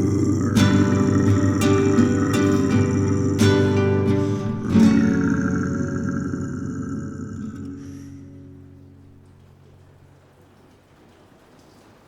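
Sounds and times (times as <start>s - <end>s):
sustained low tones: 0.0s - 9.6s
strummed guitar: 0.0s - 10.1s.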